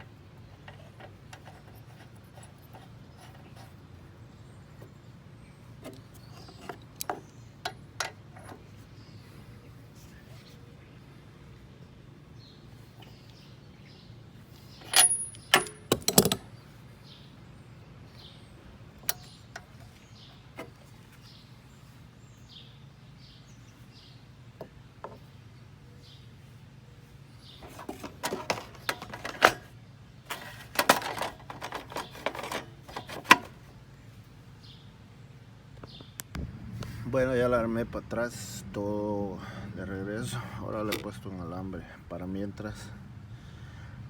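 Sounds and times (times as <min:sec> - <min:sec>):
metal tools clinking and clicking: 0:14.8 - 0:16.5, 0:27.6 - 0:29.7, 0:30.3 - 0:33.6
sharp metal clanks: 0:14.8 - 0:16.5.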